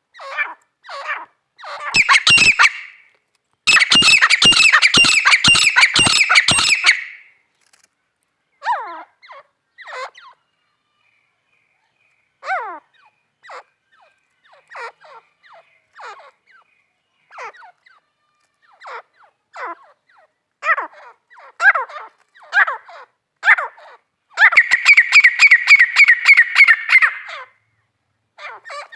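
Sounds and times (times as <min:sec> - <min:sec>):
francolin calling: 0:01.8 - 0:03.0, 0:03.7 - 0:07.3, 0:24.4 - 0:27.5.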